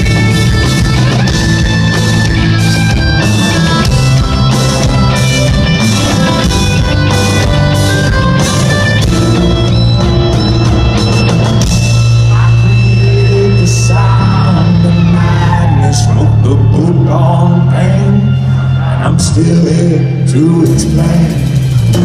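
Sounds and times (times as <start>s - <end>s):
drum kit: 0.0s - 15.2s, 20.6s - 22.0s
bass guitar: 0.0s - 22.0s
distorted electric guitars: 0.0s - 22.0s
melodic guitar line: 0.0s - 22.0s.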